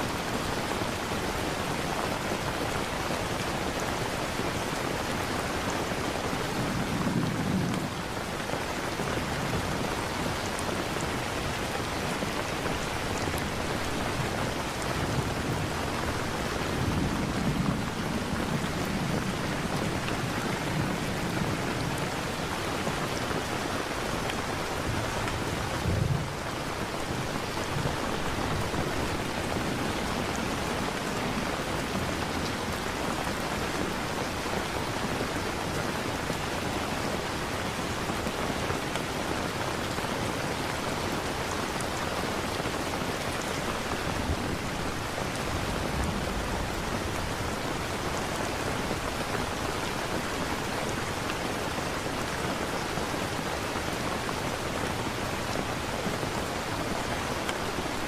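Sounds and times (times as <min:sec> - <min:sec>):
steady rain: 0:00.0 - 0:58.0
thunder rumbles: 0:24.8 - 0:30.7.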